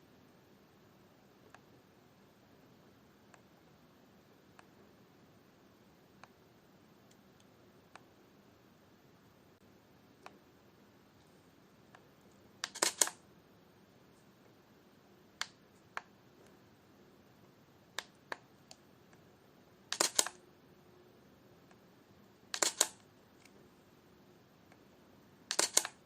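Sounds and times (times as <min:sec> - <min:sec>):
camera shutter clicks: 0:12.6 - 0:13.2, 0:19.9 - 0:20.4, 0:22.5 - 0:23.0, 0:25.5 - 0:26.0.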